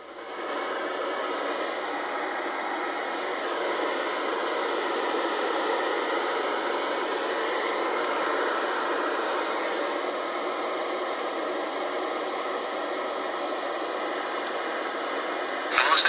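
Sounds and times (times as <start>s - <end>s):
radio static hiss: 15.6s - 16.0s.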